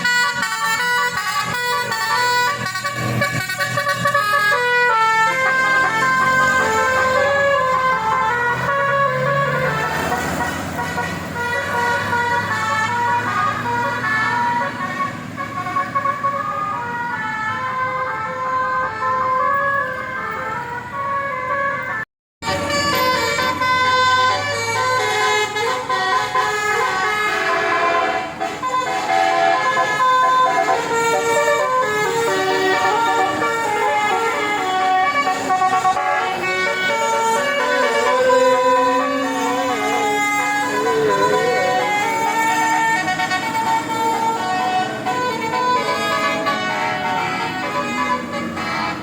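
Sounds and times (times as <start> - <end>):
multi-tone musical horn melody: 0.0 - 49.0.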